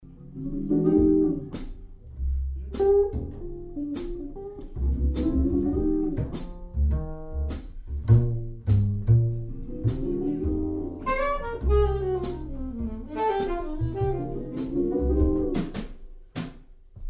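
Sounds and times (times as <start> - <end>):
deep bass notes: 0.0 - 16.1
guitar plucking chords: 0.2 - 1.6.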